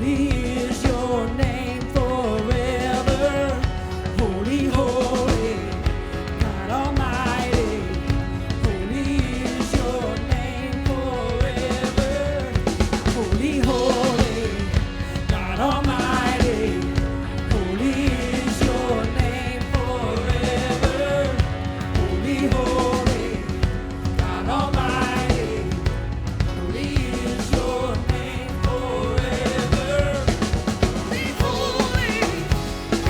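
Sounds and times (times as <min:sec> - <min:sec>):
instruments and drums: 0:00.0 - 0:33.0.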